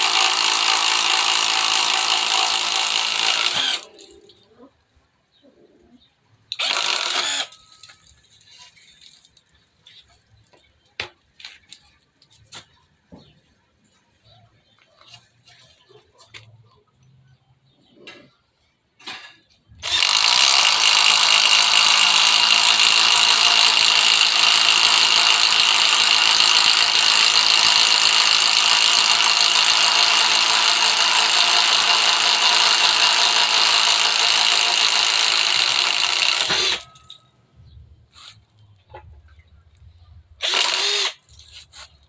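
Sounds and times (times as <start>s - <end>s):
impact driver running: 0.0s - 4.0s, 6.5s - 7.6s, 19.8s - 37.0s, 40.4s - 41.2s.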